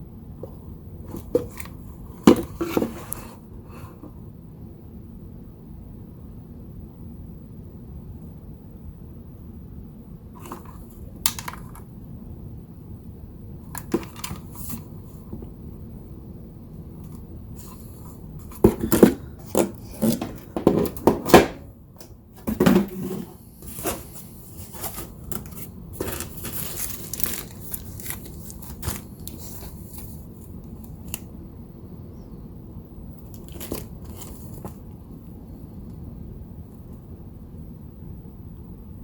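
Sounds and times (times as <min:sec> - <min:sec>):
packaging crinkling and tearing: 0:23.6 - 0:30.2.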